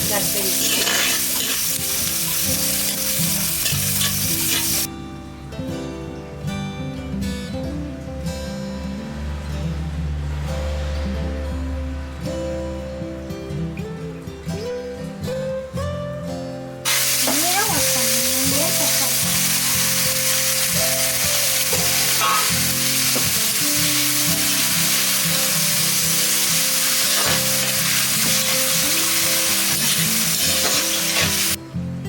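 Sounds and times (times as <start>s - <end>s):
food sizzling in a pan: 0.0s - 4.9s, 16.9s - 31.6s.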